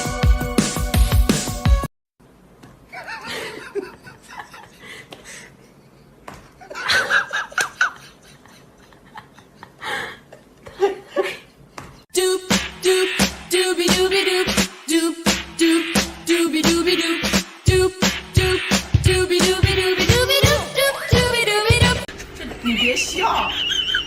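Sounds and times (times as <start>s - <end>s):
music: 0.0s - 1.9s, 12.2s - 22.1s
person laughing and snickering: 2.9s - 5.9s, 6.6s - 11.6s.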